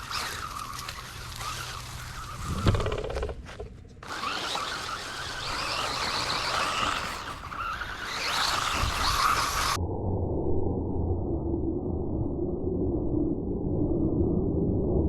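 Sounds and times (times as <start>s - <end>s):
electric toy truck motor whine: 0.0s - 9.8s.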